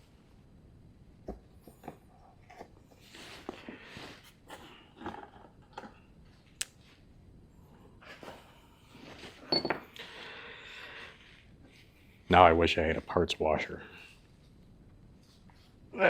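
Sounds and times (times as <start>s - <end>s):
metallic clatter with ring: 9.5s - 9.8s.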